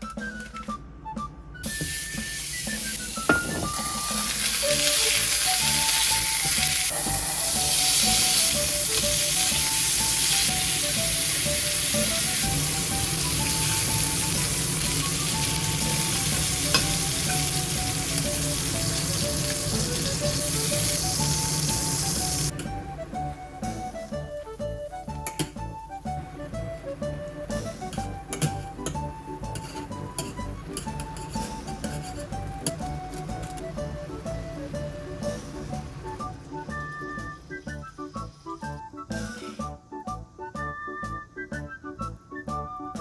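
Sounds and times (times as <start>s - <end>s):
food sizzling in a pan: 1.7s - 22.5s.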